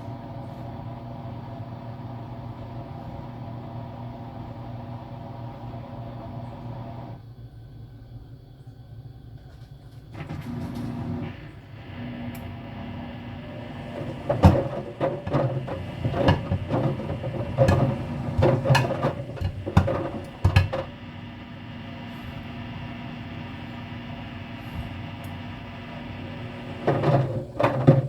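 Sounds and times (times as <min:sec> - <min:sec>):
washer-dryer motor hum: 0:00.0 - 0:28.0
loud irregular knocks and clatters: 0:13.7 - 0:20.9, 0:26.8 - 0:28.0.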